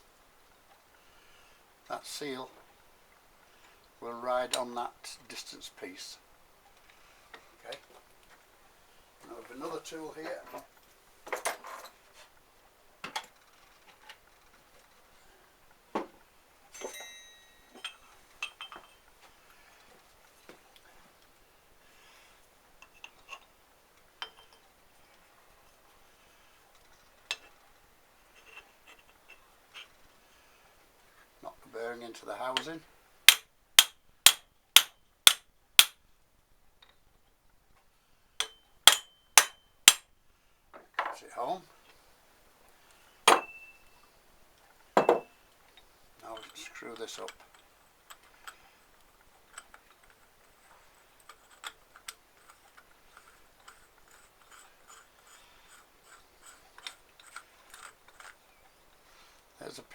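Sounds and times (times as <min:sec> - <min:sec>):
short metallic ring: 0:16.8 - 0:18.8, 0:38.4 - 0:40.0, 0:43.4 - 0:44.0
hammer striking metal tool: 0:33.3 - 0:36.0, 0:38.4 - 0:40.0
metal parts clinking on workbench: 0:38.4 - 0:40.0.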